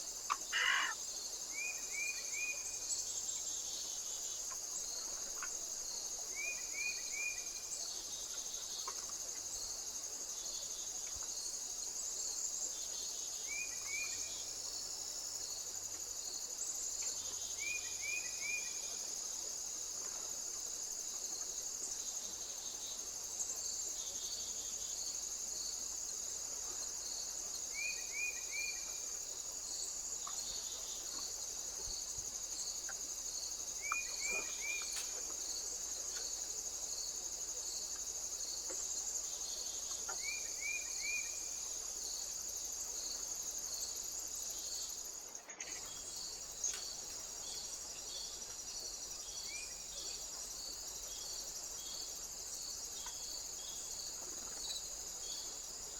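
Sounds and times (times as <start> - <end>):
crickets chirring: 0.0 - 55.9
insect pulsing: 0.2 - 1.0
small bird high chirps: 0.5 - 1.0.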